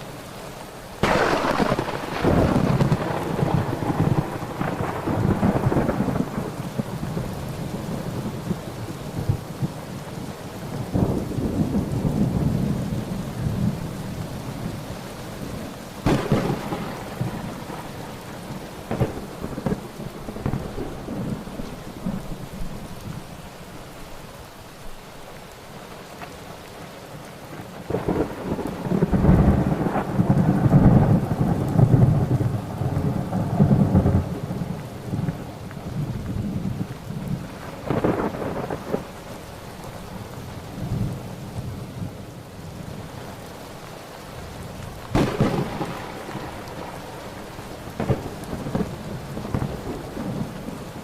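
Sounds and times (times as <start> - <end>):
steady rain: 0.0 - 51.0
sharp thunderclap: 1.0 - 7.0, 16.0 - 17.8, 18.9 - 21.5, 45.1 - 46.8, 47.9 - 50.6
rolling thunder: 1.0 - 9.9, 16.0 - 23.2, 27.8 - 39.2, 44.7 - 51.0.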